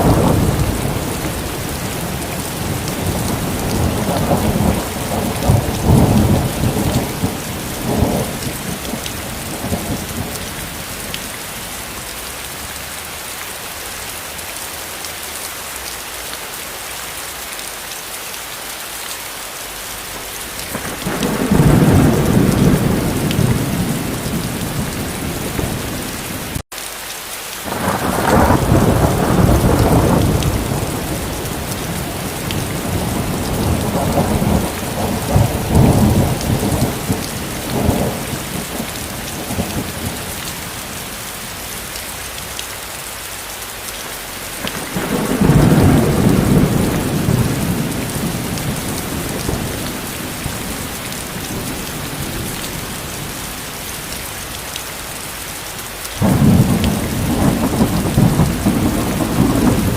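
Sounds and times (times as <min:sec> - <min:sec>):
thunder rumbling: 0:00.0 - 0:11.7, 0:20.6 - 0:26.6, 0:27.7 - 0:42.6, 0:44.5 - 0:54.8, 0:56.2 - 0:59.9
steady rain: 0:00.0 - 0:59.9.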